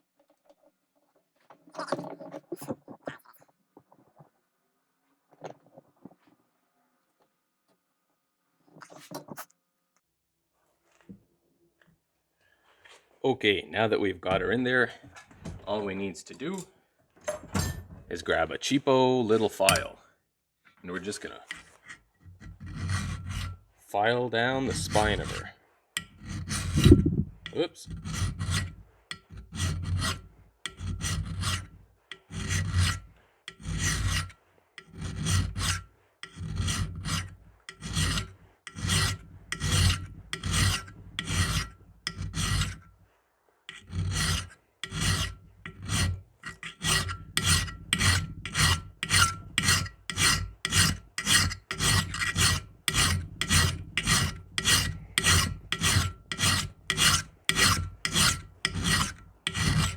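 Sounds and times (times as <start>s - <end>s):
file rasping on metal: 19.3s - 20.0s, 21.0s - 43.1s, 43.7s - 59.9s.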